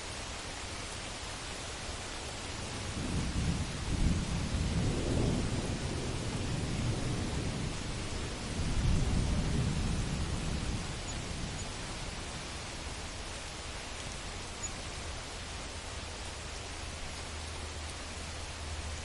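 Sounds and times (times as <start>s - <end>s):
heavy rain: 0.0s - 19.0s
thunder rumbling: 3.0s - 12.7s.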